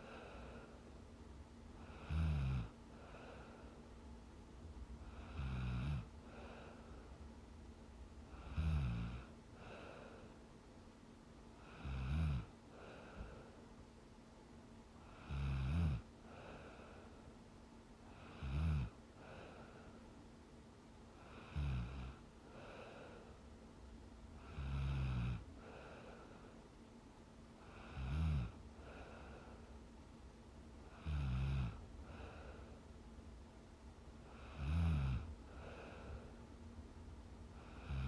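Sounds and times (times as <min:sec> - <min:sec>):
soft breath out: 0:00.0 - 0:01.0, 0:02.9 - 0:04.0, 0:06.2 - 0:07.3, 0:09.5 - 0:10.5, 0:12.7 - 0:13.8, 0:16.2 - 0:17.4, 0:19.2 - 0:20.2, 0:22.4 - 0:23.5, 0:25.5 - 0:26.8, 0:28.7 - 0:29.9, 0:32.0 - 0:33.0, 0:35.4 - 0:36.6
woman snoring: 0:01.8 - 0:03.4, 0:05.1 - 0:06.8, 0:08.3 - 0:09.9, 0:11.6 - 0:12.5, 0:15.0 - 0:16.7, 0:18.1 - 0:19.5, 0:21.2 - 0:23.0, 0:24.4 - 0:26.0, 0:27.6 - 0:29.3, 0:30.9 - 0:32.4, 0:34.3 - 0:36.2, 0:37.6 - 0:38.0.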